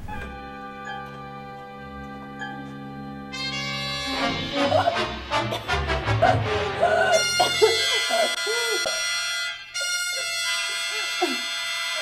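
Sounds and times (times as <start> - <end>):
sustained music chord: 0.3 - 9.5.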